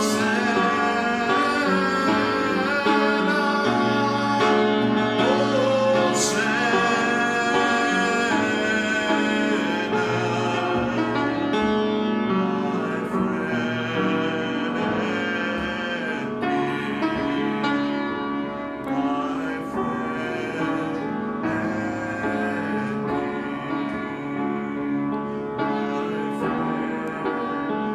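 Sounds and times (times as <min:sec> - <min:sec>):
slow worship music: 0:00.0 - 0:27.9.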